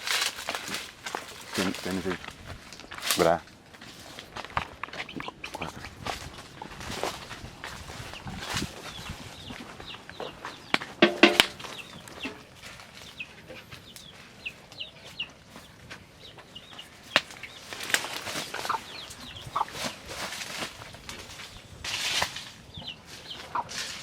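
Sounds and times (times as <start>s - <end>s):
chickens clucking: 1.3s - 24.0s
sharp knock: 11.0s - 11.6s.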